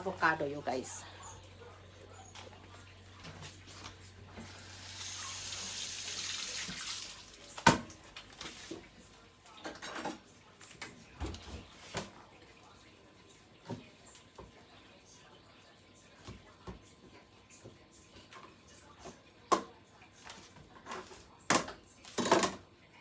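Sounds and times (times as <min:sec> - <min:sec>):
kitchen tap running: 0:04.3 - 0:08.4.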